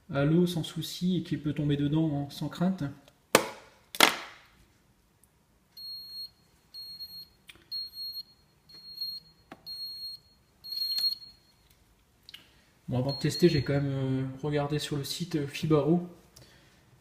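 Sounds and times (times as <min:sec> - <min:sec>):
high alarm beeps: 0:05.8 - 0:11.6, 0:13.0 - 0:13.7.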